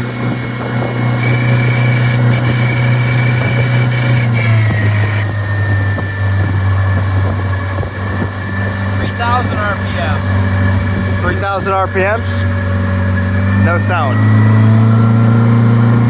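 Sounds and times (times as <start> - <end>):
high-pitched squeal: 0.0 - 15.8
outboard engine running: 0.0 - 16.0.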